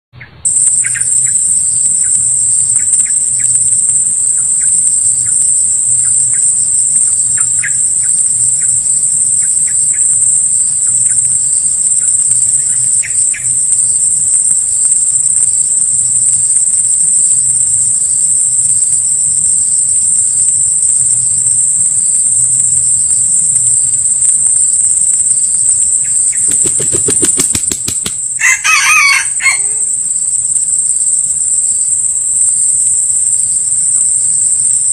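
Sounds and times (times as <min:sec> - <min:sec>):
insect drone: 0:00.2 - 0:34.9
rooster wings beating: 0:26.4 - 0:29.7
rooster crowing: 0:26.5 - 0:30.0.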